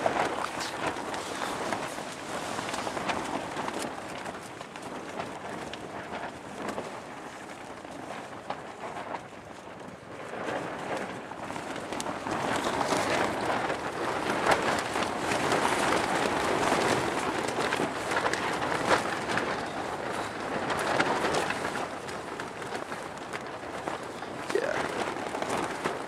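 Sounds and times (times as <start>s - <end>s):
tent fabric flapping in wind: 0.0s - 26.0s.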